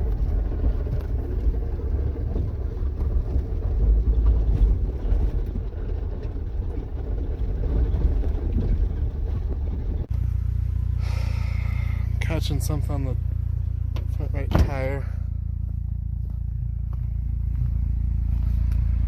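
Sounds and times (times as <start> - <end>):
knocks and rattles: 0.0 - 10.1
smooth driving hum: 0.0 - 19.0
tyres and suspension rumbling: 0.0 - 19.0.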